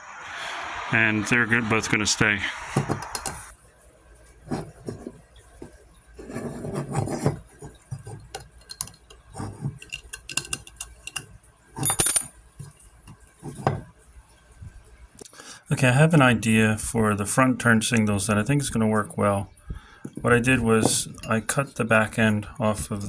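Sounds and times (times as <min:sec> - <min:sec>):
small hard parts clinking: 0:08.2 - 0:12.7.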